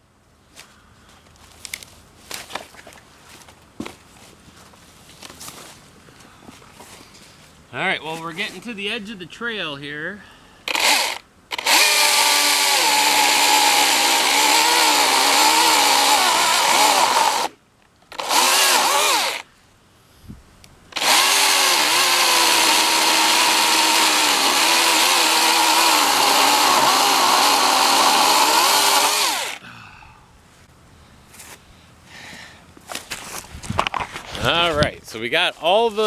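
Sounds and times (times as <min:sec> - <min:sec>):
electric chainsaw cutting wood: 0:10.7 - 0:19.4, 0:21.0 - 0:29.6.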